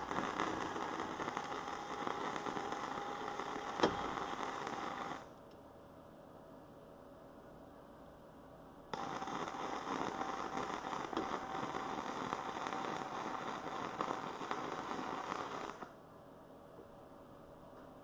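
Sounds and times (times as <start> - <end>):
welder arc crackling: 0.0 - 5.4, 8.9 - 16.0.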